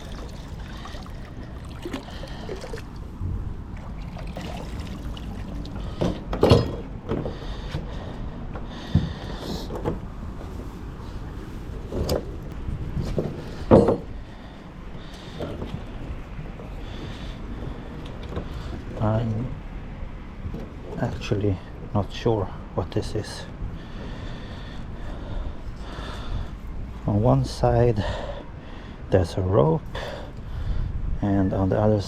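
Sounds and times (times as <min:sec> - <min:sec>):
water trickling: 0:00.0 - 0:06.0
low steady rumble: 0:00.0 - 0:32.0
metallic knocks and clanks: 0:06.0 - 0:07.4, 0:13.2 - 0:14.2.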